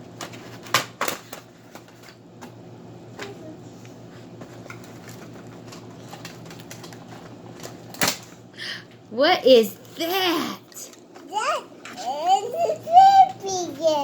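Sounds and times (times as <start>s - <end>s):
plastic packaging rustling: 4.2s - 8.4s
plastic packaging clicks: 4.7s - 8.3s.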